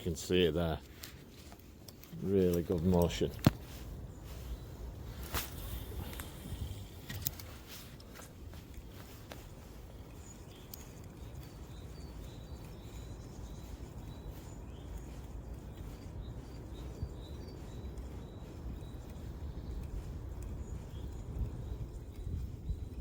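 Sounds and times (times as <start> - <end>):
small birds chirping: 0.0 - 23.0
steady low rumble: 3.1 - 23.0.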